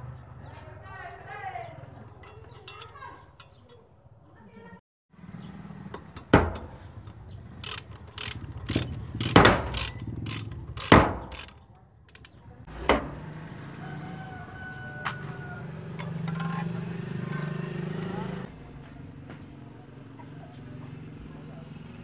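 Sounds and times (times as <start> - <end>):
metal knocks and clanks: 6.0 - 13.2.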